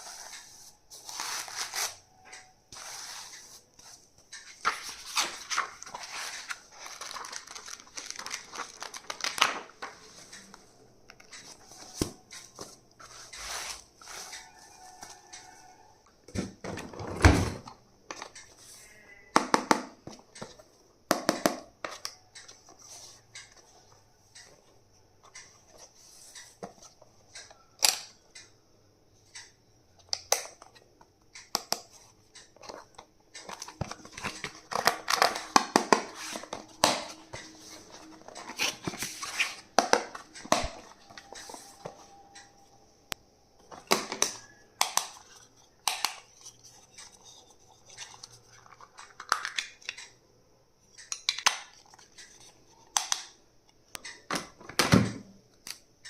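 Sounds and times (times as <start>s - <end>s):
plastic packaging crinkling and tearing: 4.6s - 10.0s.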